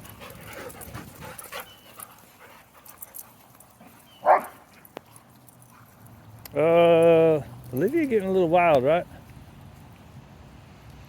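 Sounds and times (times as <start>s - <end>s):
dog barking: 4.2s - 4.6s.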